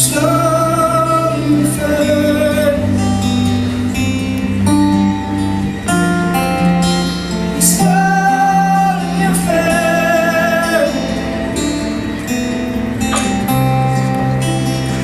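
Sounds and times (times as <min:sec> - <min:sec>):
acoustic guitar strumming: 0:00.0 - 0:15.0
person singing wordlessly: 0:07.6 - 0:11.0.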